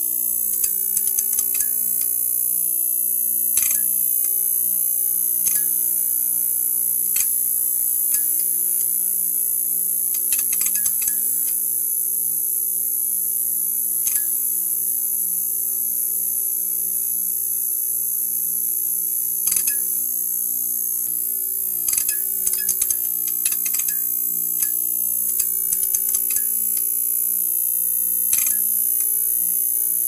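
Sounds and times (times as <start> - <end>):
neon sign buzzing: 18.8 - 30.0.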